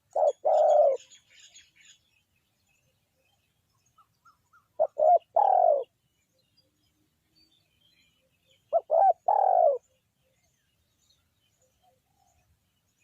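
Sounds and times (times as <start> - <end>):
dove cooing: 0.0 - 1.2, 4.5 - 5.9, 8.7 - 9.9.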